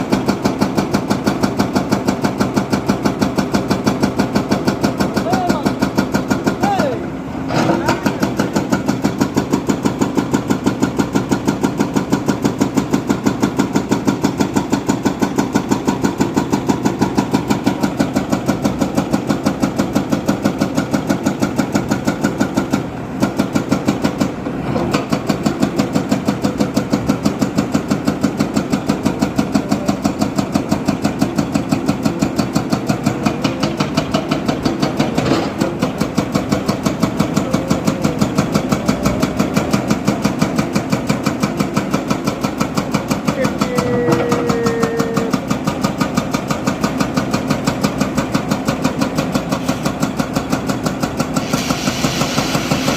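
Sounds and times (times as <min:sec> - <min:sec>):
diesel engine chugging: 0:00.0 - 0:52.9.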